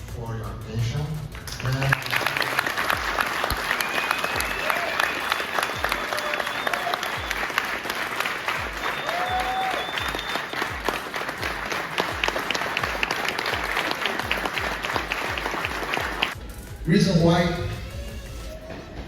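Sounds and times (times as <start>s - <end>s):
background music beat: 0.0s - 19.0s
audience clapping: 1.3s - 16.4s.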